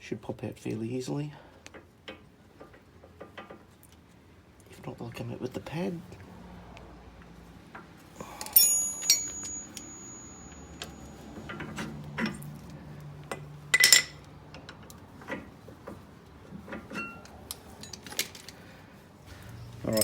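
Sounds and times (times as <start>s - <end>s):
metal brake parts clinking: 8.2s - 12.7s, 13.3s - 15.5s, 16.7s - 18.6s.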